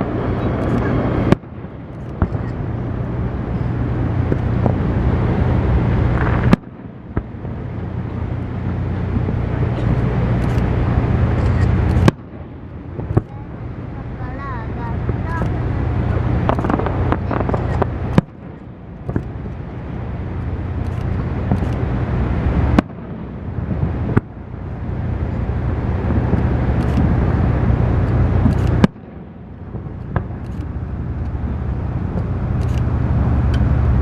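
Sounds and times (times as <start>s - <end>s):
low rumble: 0.0s - 34.0s
faint fireworks pops: 6.2s - 7.5s, 13.0s - 13.4s, 16.4s - 19.4s, 28.0s - 31.3s
fireworks bangs: 16.1s - 19.5s.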